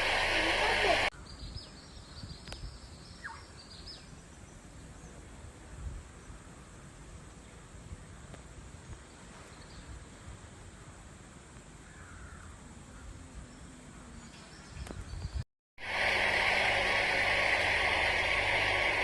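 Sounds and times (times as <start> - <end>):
faint high bird chirps: 1.2 - 4.2
low rumble: 15.8 - 19.0.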